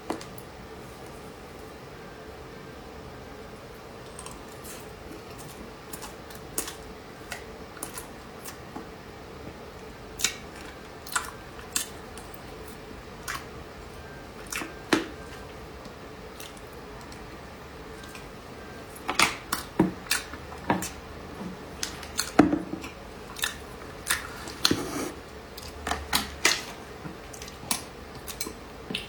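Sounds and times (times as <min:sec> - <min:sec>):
faint steady hum: 0:00.0 - 0:29.0
crunching while eating: 0:04.0 - 0:08.7, 0:18.9 - 0:29.0.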